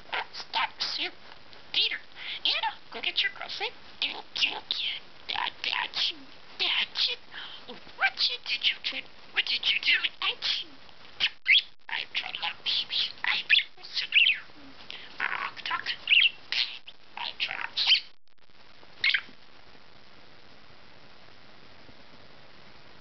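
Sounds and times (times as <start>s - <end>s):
budgerigar chattering: 1.8s - 7.2s, 8.0s - 14.5s, 15.2s - 18.2s, 19.0s - 19.3s.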